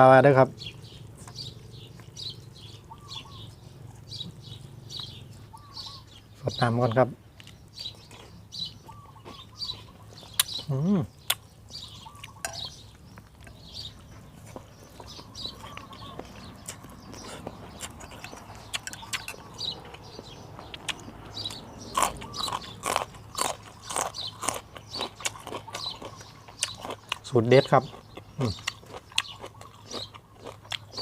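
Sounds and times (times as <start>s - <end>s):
chewing: 0.7s - 5.6s, 7.4s - 10.7s, 11.3s - 31.0s
mouth clicks: 10.3s - 11.5s, 15.6s - 20.1s, 20.7s - 22.8s.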